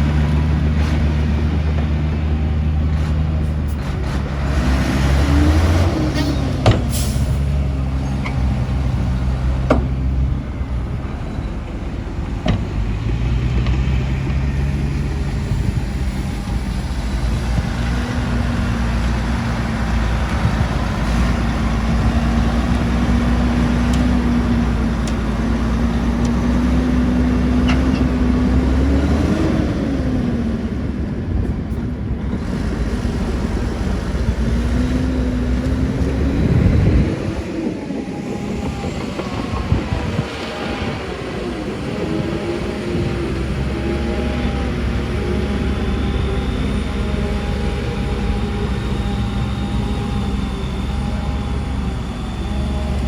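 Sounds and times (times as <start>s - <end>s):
diesel machinery running: 0.0s - 53.0s
whining tone: 0.0s - 53.0s.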